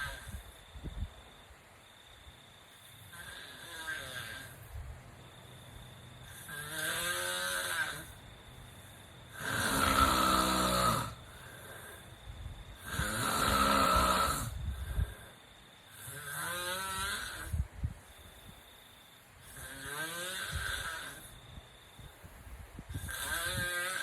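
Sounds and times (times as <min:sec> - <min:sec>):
person snoring: 0:03.1 - 0:04.6, 0:06.3 - 0:08.1, 0:09.3 - 0:12.0, 0:12.8 - 0:15.3, 0:16.0 - 0:17.6, 0:19.5 - 0:21.3, 0:23.0 - 0:24.0.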